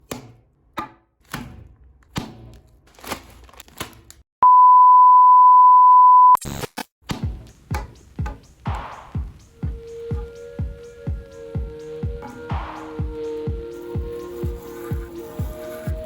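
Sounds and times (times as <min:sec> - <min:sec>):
steady beep tone: 0:04.4 - 0:06.4
music: 0:07.0 - 0:16.0.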